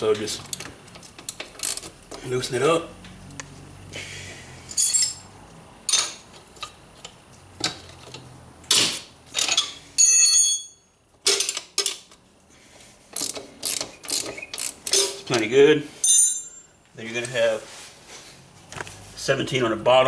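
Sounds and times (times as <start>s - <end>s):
wrench clicking on metal bolts: 1.2s - 2.2s, 11.2s - 12.1s, 13.2s - 15.5s
bright metallic clink: 4.7s - 5.3s, 16.0s - 16.7s.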